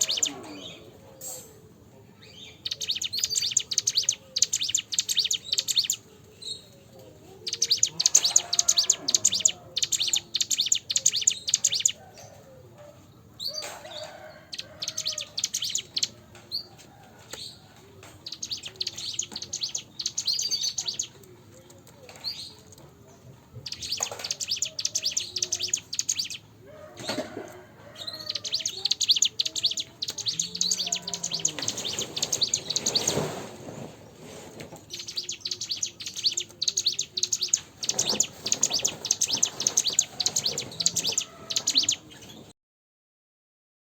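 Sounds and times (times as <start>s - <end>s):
bird rapid high chirping: 0.0s - 0.9s, 2.2s - 6.7s, 7.5s - 12.0s, 14.5s - 16.7s, 18.2s - 21.2s, 23.6s - 26.5s, 28.2s - 33.4s, 34.8s - 42.4s.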